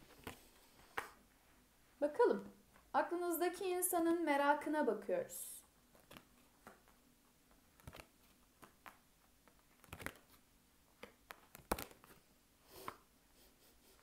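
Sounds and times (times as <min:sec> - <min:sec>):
cards sliding and tapping: 0:00.1 - 0:01.2, 0:05.9 - 0:07.0, 0:07.8 - 0:10.4, 0:11.0 - 0:12.2.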